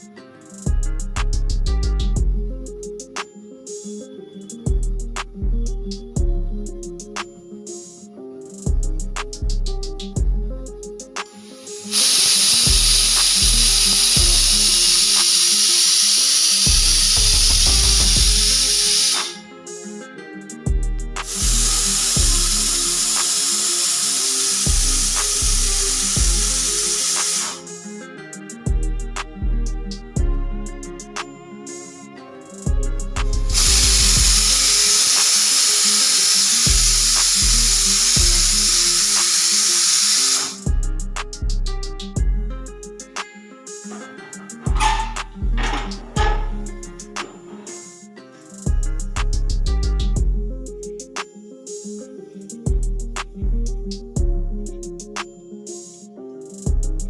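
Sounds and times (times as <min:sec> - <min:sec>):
background music with beat: 0:00.0 - 0:57.0
pressure cooker whistle hissing: 0:11.5 - 0:19.4, 0:21.2 - 0:27.8, 0:33.5 - 0:40.6, 0:44.7 - 0:46.6.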